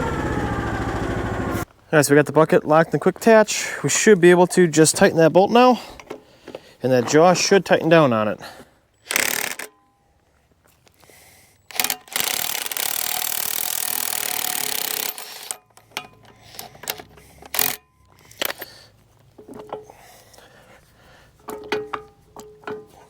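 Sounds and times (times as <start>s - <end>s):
power tool running: 0.0s - 1.7s
metal clicks and knocks: 21.4s - 23.0s.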